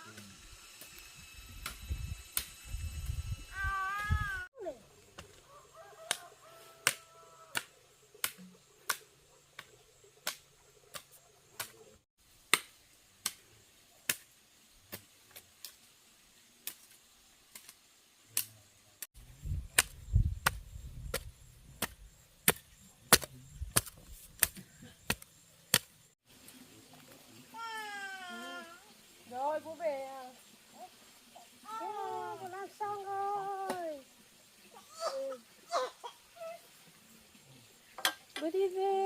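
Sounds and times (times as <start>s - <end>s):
chopping strikes: 19.8s - 25.9s.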